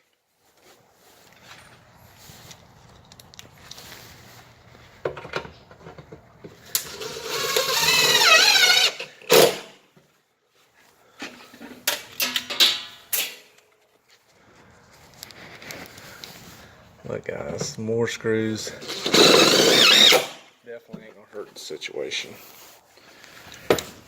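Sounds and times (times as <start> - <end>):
cordless drill whirring: 6.8 - 9.8, 18.8 - 20.4.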